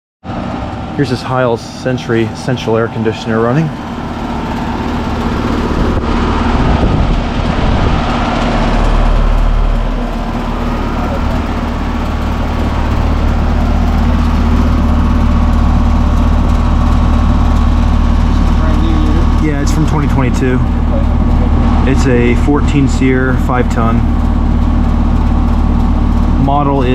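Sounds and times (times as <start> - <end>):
compressor hum: 0.3 - 26.9
condenser fan whoosh: 0.3 - 26.9
low rumble: 1.8 - 26.9.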